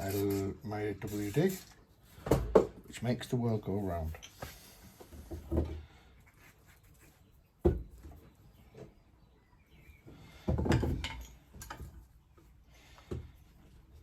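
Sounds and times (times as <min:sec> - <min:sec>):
knocking and scraping: 0:10.4 - 0:12.0.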